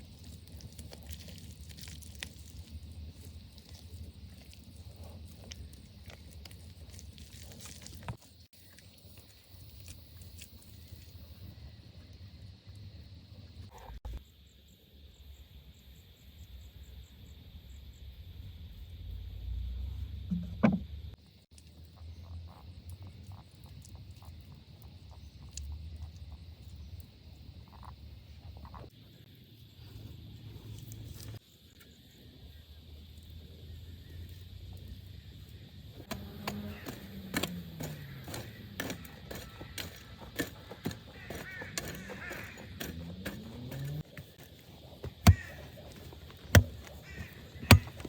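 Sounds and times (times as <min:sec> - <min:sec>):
steady insect buzz: 0:08.2 - 0:48.0
faint frog calls: 0:45.1 - 0:48.0.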